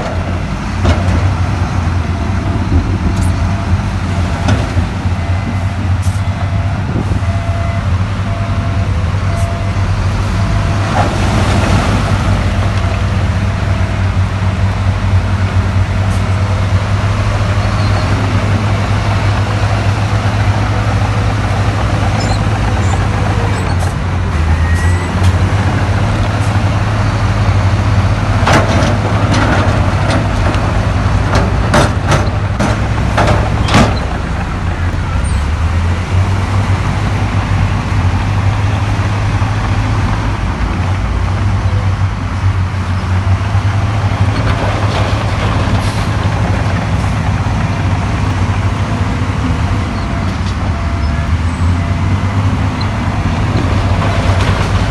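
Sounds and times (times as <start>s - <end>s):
diesel engine rumbling: 0.0s - 54.9s
sharp metal knocks and clanks: 31.3s - 34.2s.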